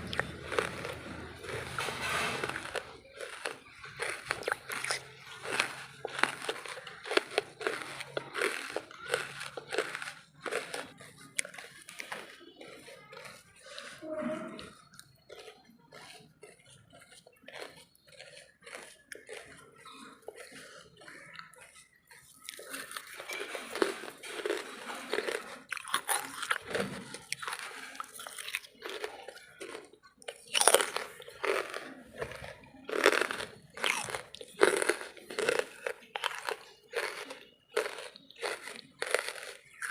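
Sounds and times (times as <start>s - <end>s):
chewing crunchy charcoal: 0.0s - 39.9s.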